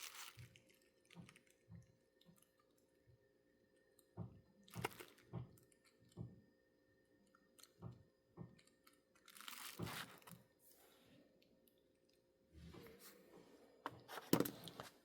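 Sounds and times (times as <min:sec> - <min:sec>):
handling rustle: 0:09.3 - 0:10.4.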